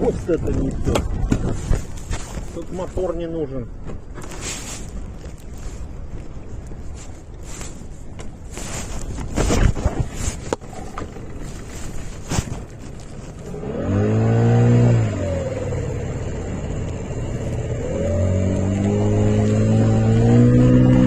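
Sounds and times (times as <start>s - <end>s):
wind: 0.0s - 21.0s
outboard motor revving: 13.4s - 21.0s.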